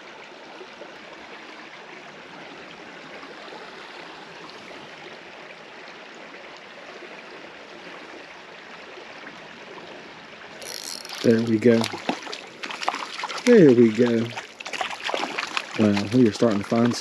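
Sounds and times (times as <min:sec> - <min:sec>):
creek water running: 0:00.0 - 0:17.0.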